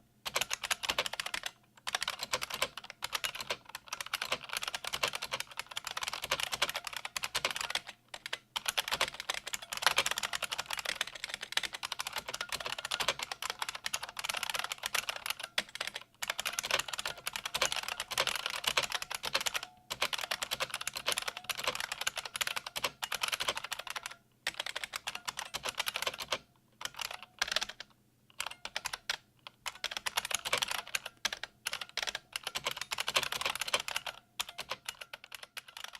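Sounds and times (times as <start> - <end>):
fast keyboard typing clatter: 0.3 - 35.9.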